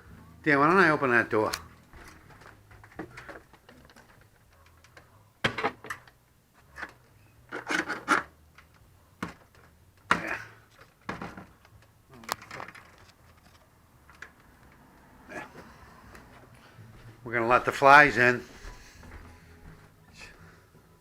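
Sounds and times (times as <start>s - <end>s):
wood knocking and clattering: 1.8s - 6.1s, 6.8s - 14.8s.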